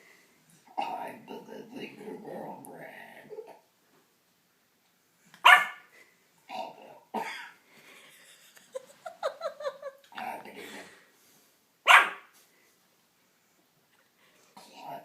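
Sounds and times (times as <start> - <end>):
puppy barking: 5.4 - 5.9, 11.9 - 12.3.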